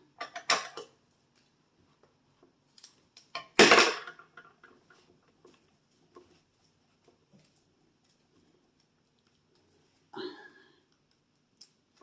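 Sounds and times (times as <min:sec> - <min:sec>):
loud plastic clatter: 0:03.5 - 0:04.4.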